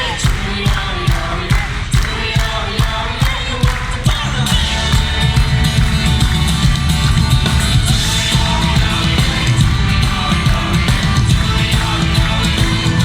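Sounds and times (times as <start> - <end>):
live band playing folk song: 0.0 - 13.0.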